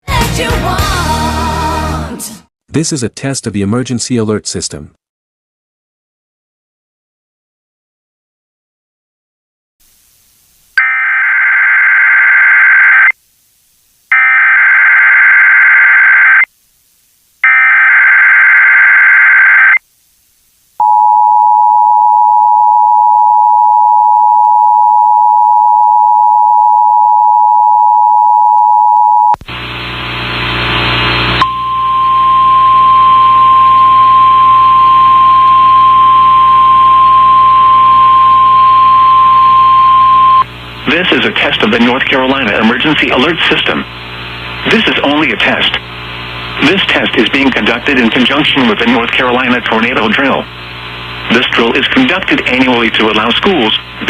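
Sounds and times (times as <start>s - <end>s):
radio static and hum: 14.2s - 19.8s, 29.1s - 54.0s
steady test tone: 30.2s - 41.1s
two-tone attention signal: 31.4s - 40.4s.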